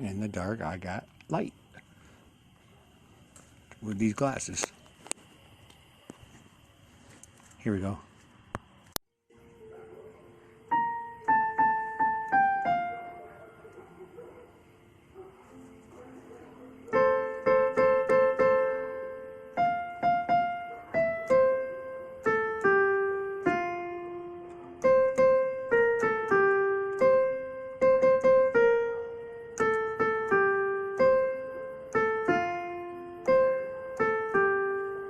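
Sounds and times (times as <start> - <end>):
slow piano melody: 9.3 - 35.0.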